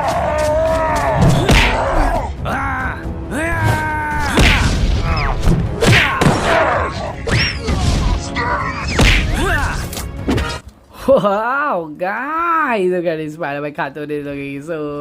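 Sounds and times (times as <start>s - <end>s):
cartoonish music: 0.0s - 10.6s.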